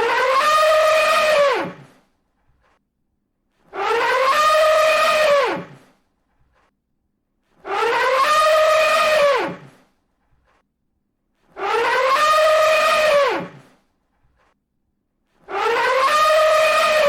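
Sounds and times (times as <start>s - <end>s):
elephant trumpeting: 0.0s - 1.9s, 3.7s - 5.8s, 7.6s - 9.8s, 11.6s - 13.7s, 15.5s - 17.0s.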